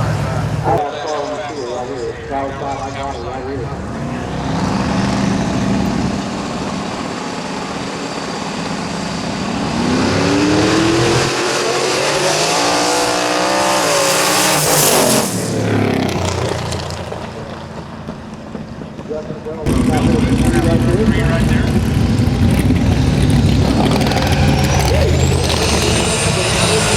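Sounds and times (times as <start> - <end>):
race car engine accelerating: 3.6 - 26.9.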